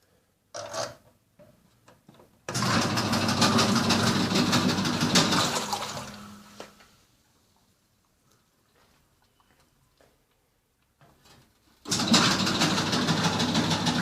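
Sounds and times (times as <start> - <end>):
washing machine rattling and grinding: 2.5 - 6.5, 11.8 - 14.0.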